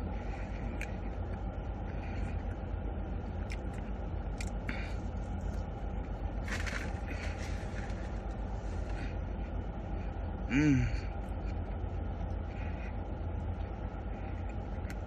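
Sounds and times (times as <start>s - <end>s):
eating clicks and crackles: 3.3s - 5.6s.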